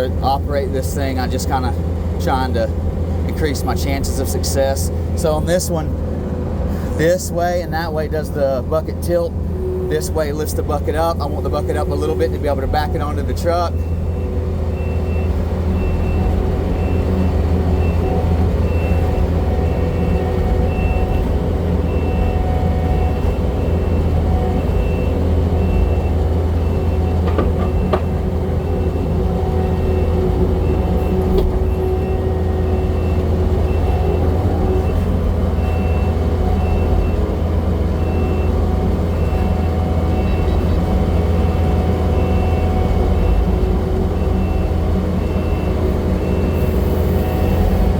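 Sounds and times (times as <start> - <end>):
diesel engine running: 0.0 - 47.9
reversing alarm beeping: 9.6 - 47.9.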